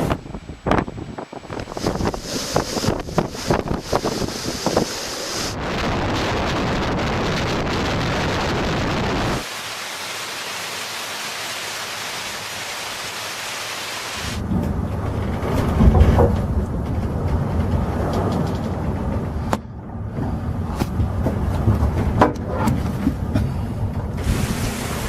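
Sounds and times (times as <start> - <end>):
roar of wind and sea: 0.0 - 25.0
rain hiss: 1.2 - 14.4, 24.2 - 25.0
low rumble: 14.4 - 24.3.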